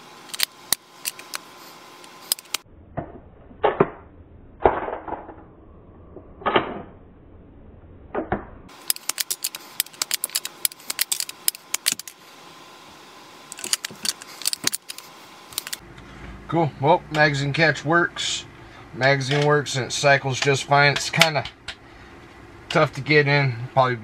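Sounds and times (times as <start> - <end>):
light clicks and rattles: 8.8 - 12.2.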